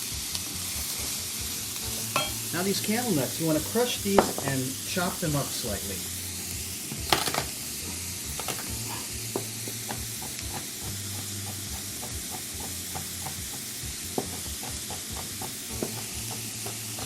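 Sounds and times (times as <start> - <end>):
onion and garlic sizzling in oil: 0.0 - 17.0
knife knocking on cutting board: 4.2 - 4.5.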